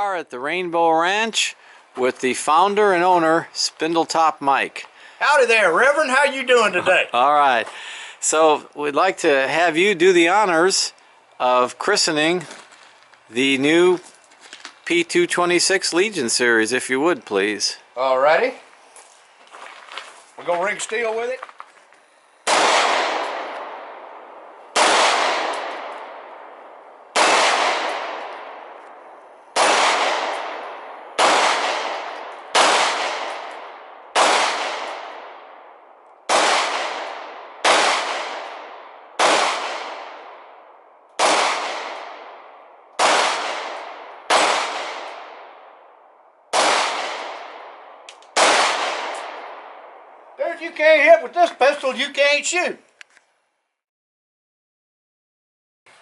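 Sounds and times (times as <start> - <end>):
pistol shots with echo: 22.4 - 50.2.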